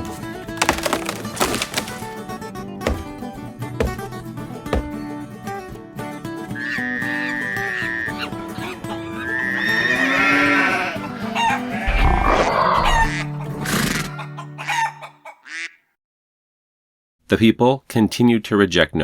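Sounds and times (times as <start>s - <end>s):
background music: 0.0s - 15.1s
rooster crowing: 9.2s - 13.2s, 14.1s - 15.2s.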